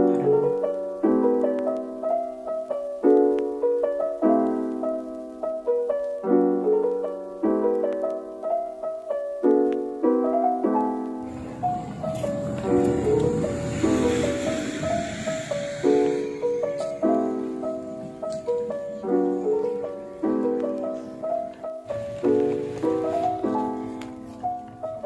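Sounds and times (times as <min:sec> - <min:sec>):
soft piano melody: 0:00.0 - 0:25.0
steady hiss: 0:11.2 - 0:25.0.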